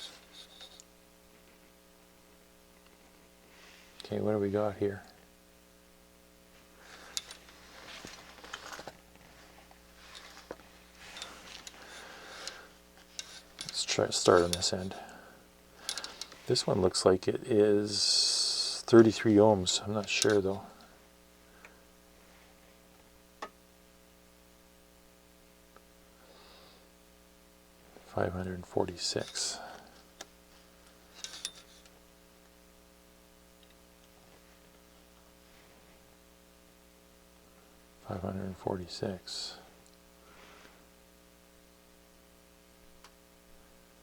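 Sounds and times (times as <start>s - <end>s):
low mains hum: 0.0s - 44.0s
light handling clicks and rustles: 7.0s - 15.2s, 15.8s - 16.8s, 20.0s - 20.6s, 28.8s - 32.0s.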